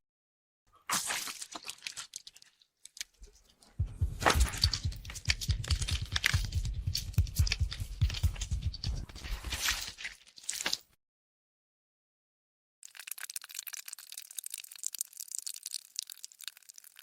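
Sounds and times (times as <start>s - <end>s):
wet squelching and crackling: 0.8s - 11.0s, 12.8s - 17.0s
low thuds: 3.8s - 9.2s.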